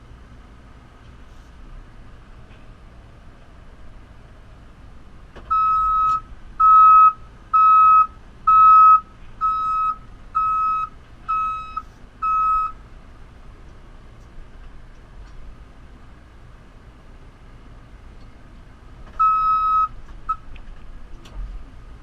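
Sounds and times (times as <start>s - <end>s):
faint low engine rumble: 0.0s - 22.0s
reversing alarm beeps: 5.5s - 12.8s, 19.2s - 20.4s.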